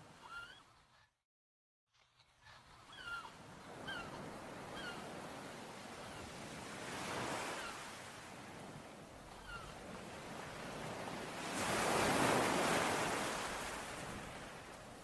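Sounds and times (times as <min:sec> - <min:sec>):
sea waves breaking on shore: 0:03.4 - 0:15.0.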